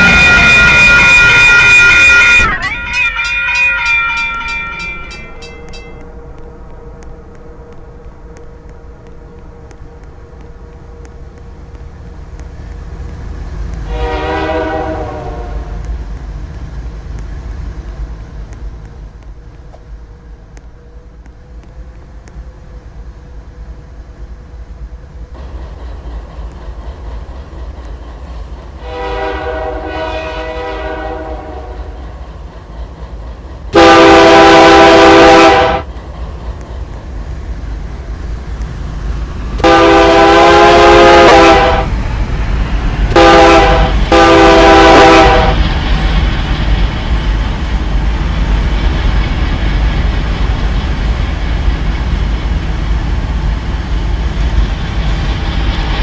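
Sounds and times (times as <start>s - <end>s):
locomotive air horn blasts: 0.0s - 2.6s, 13.8s - 15.8s, 28.8s - 31.8s, 33.8s - 35.9s, 39.6s - 41.9s, 43.1s - 45.6s
train rolling on rails: 0.0s - 56.0s
diesel engine rumble: 5.1s - 28.9s.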